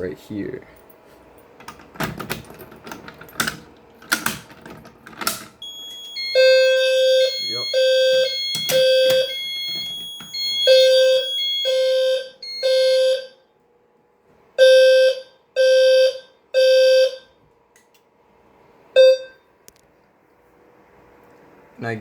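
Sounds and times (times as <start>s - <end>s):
high steady electronic tone: 5.6s - 13.2s
fire alarm horn blasts: 5.6s - 13.5s, 14.6s - 17.4s, 19.0s - 19.4s.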